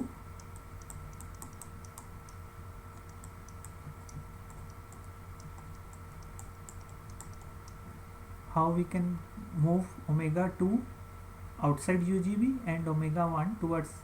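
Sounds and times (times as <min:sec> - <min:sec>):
low electrical hum: 0:00.0 - 0:14.0
light tapping clicks: 0:00.4 - 0:07.8.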